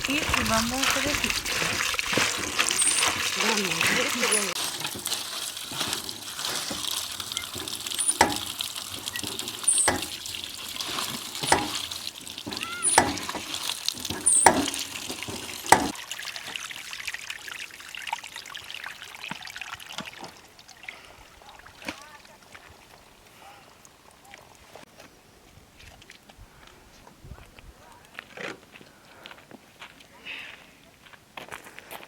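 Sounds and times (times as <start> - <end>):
water trickling and splashing: 0.0 - 24.8
dishes clinking: 2.4 - 16.0.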